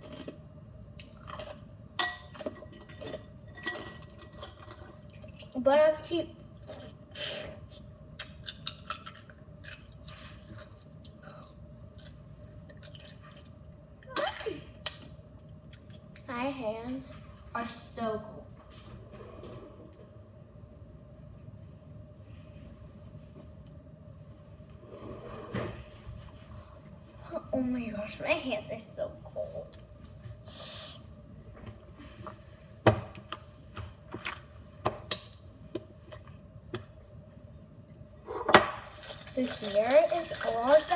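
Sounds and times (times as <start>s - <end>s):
person chewing ice: 0.0s - 0.4s.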